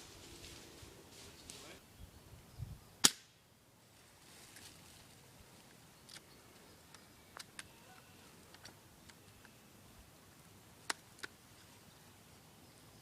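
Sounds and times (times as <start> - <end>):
airsoft gun shot: 3.0 - 3.4.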